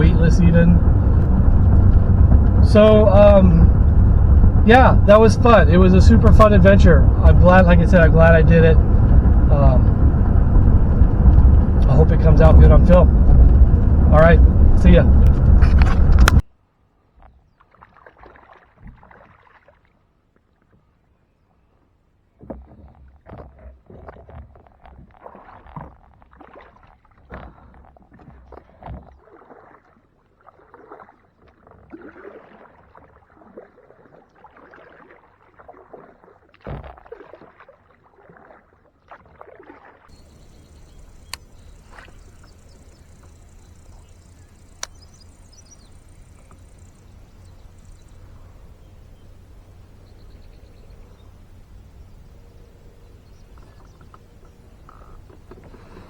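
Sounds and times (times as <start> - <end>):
steady low hum: 0.0 - 16.4, 40.1 - 56.0
water splashing and sloshing: 17.5 - 20.6, 24.9 - 56.0
single clicks: 41.1 - 42.6, 44.8 - 45.2.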